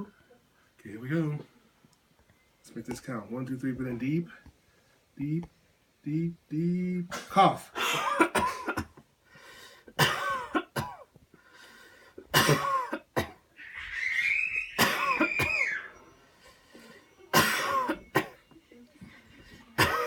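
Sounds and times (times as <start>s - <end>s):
person coughing hard: 7.1s - 9.0s, 10.0s - 11.1s, 12.3s - 13.4s, 14.8s - 15.7s, 17.3s - 18.4s, 19.8s - 20.0s
deep breath: 9.2s - 10.0s, 11.3s - 12.3s, 16.3s - 17.2s
high-pitched strained sound: 13.6s - 18.3s.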